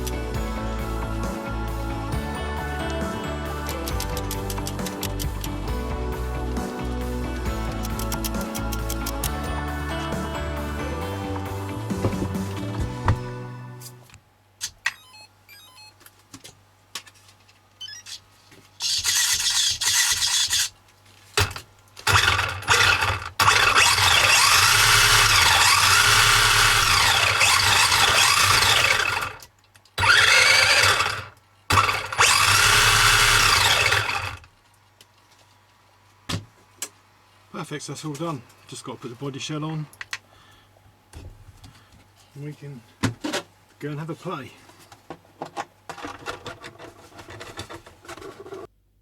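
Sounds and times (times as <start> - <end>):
electric motor whirring: 22.0 - 29.4, 30.0 - 34.4.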